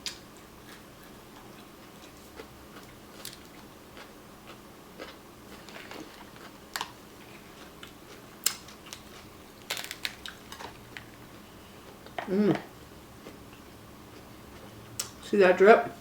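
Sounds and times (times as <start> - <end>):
crab shell cracking: 8.5 - 11.1.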